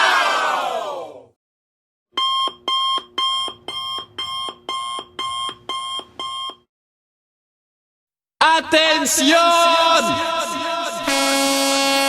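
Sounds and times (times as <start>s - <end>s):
alarm clock beeping: 2.2s - 6.6s.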